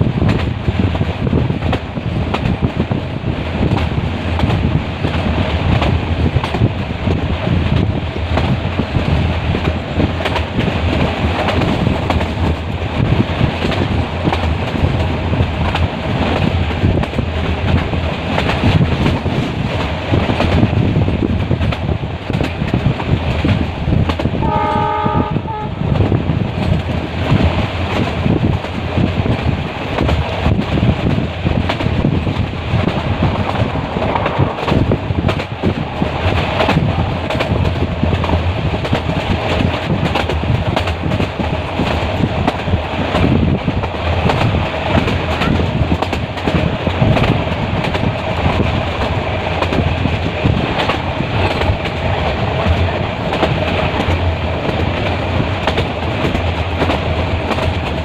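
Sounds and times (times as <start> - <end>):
train rumbling on rails: 0.0 - 58.0
locomotive horn: 24.4 - 26.0.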